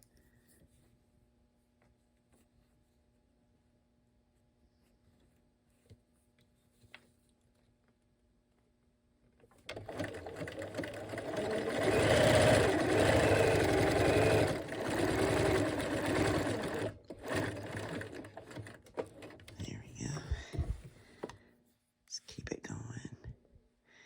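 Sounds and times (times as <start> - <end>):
sewing machine stitching: 9.7 - 19.6.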